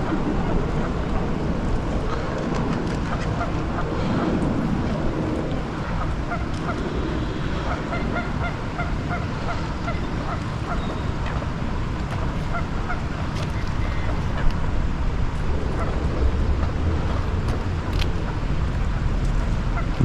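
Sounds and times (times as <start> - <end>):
wind on microphone: 0.0 - 20.0
waterfowl calling: 4.8 - 11.5.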